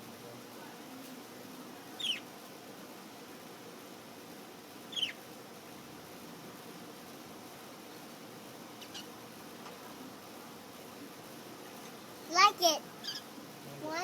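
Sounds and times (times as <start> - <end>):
bird chirping high: 4.9 - 5.2.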